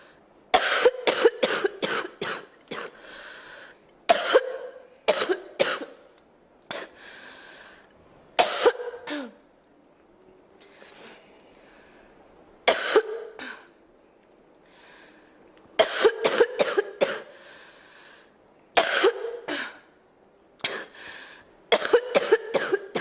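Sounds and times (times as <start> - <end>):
girl coughing: 0.6 - 3.0, 4.1 - 6.0, 8.4 - 9.4, 12.7 - 13.7, 15.8 - 17.3, 18.8 - 19.8, 21.7 - 23.0.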